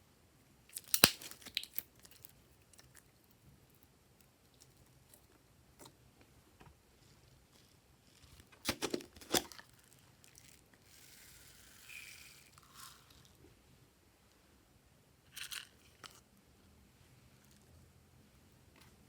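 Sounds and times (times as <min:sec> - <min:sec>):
slime squishing and popping: 0:00.7 - 0:02.3.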